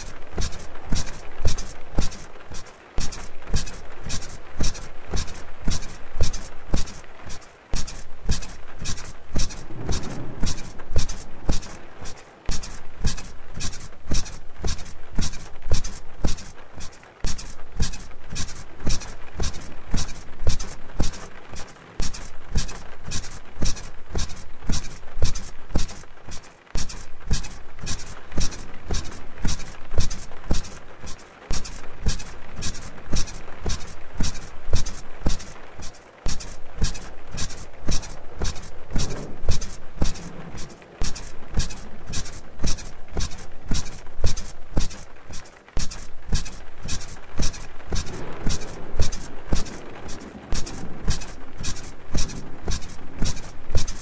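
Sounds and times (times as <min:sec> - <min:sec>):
bed springs squeaking: 0:00.0 - 0:54.0
low thumps: 0:07.8 - 0:16.5.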